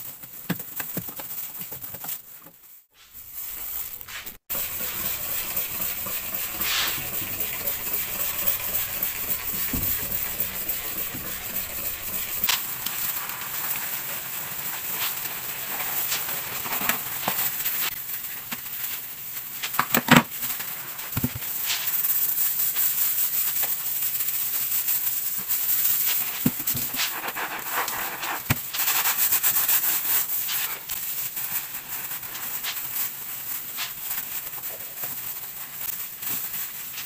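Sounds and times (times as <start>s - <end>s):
rubbing or rustling noise: 0.1s - 17.5s, 25.8s - 37.0s.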